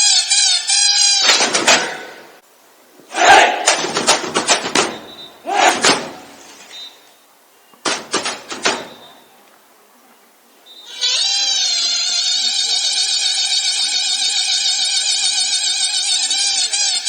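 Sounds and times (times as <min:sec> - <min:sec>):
sharp cracks and slaps: 0:01.2 - 0:02.3, 0:03.1 - 0:06.8, 0:07.8 - 0:09.2
person shouting: 0:03.1 - 0:03.8, 0:05.4 - 0:06.0
music: 0:14.3 - 0:17.0.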